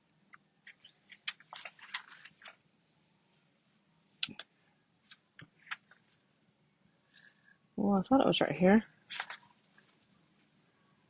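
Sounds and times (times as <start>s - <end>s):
pages being turned: 0.6s - 2.6s, 5.0s - 6.2s, 9.1s - 10.2s.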